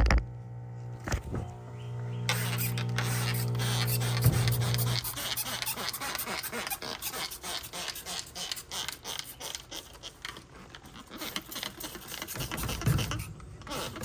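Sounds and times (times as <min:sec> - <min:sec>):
trigger sprayer spray hisses: 0:02.2 - 0:05.9.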